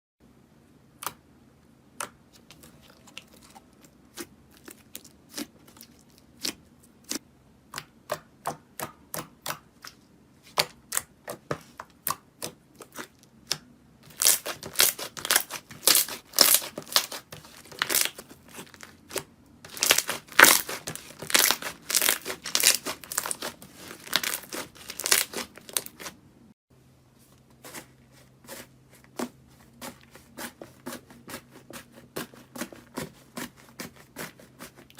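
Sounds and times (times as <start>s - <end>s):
slime crackling and crunching: 14.0s - 26.2s.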